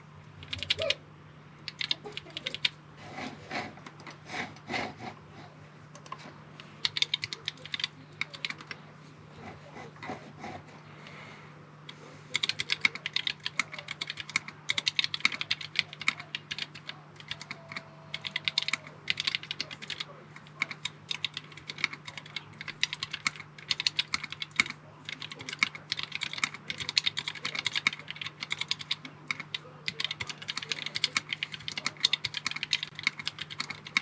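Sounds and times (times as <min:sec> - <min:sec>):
low electrical hum: 0:00.0 - 0:34.0
keyboard typing clacks: 0:01.6 - 0:02.7, 0:06.8 - 0:08.8, 0:12.4 - 0:34.0.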